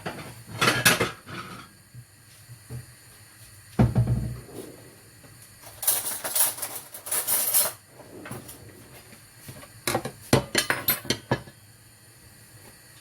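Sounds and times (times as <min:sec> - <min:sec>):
dishes scraping: 0:05.7 - 0:08.6
dishes clinking: 0:09.9 - 0:11.5.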